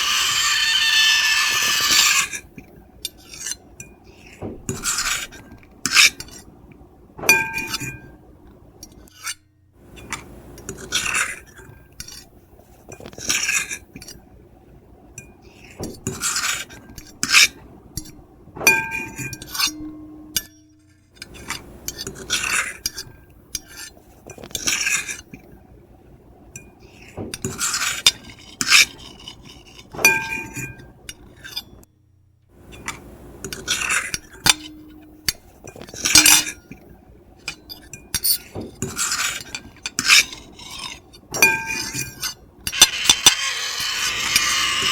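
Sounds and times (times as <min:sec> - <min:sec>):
cutlery scraping a plate: 0:00.0 - 0:06.5, 0:07.3 - 0:08.1, 0:08.9 - 0:09.4, 0:10.0 - 0:14.2, 0:15.2 - 0:25.5, 0:26.5 - 0:31.9, 0:32.7 - 0:36.8, 0:37.4 - 0:44.9
cutlery clinking: 0:07.2 - 0:08.1, 0:18.7 - 0:25.4, 0:26.6 - 0:31.8, 0:32.7 - 0:36.8, 0:37.4 - 0:44.9
plate ringing: 0:07.3 - 0:08.2, 0:18.7 - 0:21.0, 0:30.0 - 0:30.9, 0:34.4 - 0:35.5, 0:36.1 - 0:36.7, 0:41.4 - 0:44.9.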